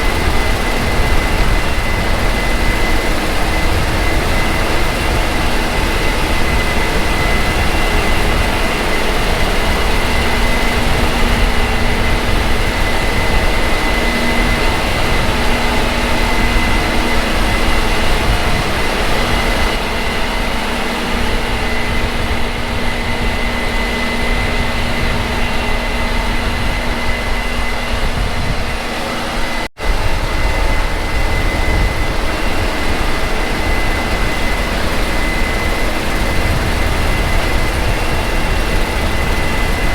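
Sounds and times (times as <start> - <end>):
combine harvester drone: 0.0 - 39.9
high machine whine: 0.0 - 39.9.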